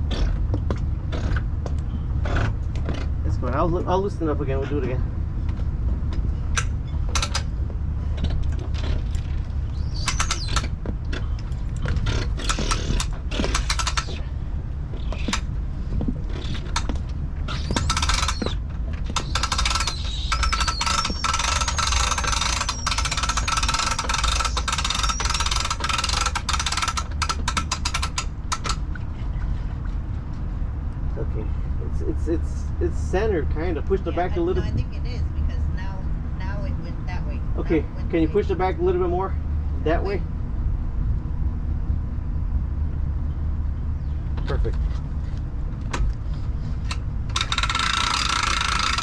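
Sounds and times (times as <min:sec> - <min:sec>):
steady low rumble: 0:00.0 - 0:47.7
winch ratcheting: 0:06.6 - 0:14.4, 0:16.3 - 0:28.9, 0:46.8 - 0:49.0.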